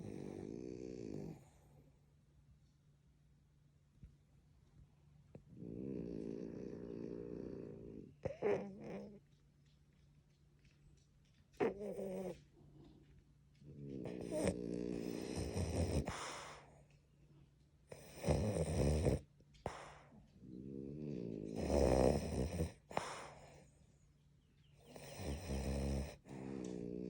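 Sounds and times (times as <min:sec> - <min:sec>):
dog snoring: 0:00.0 - 0:01.9, 0:05.3 - 0:09.3, 0:11.6 - 0:17.0, 0:17.9 - 0:23.8, 0:24.8 - 0:27.0.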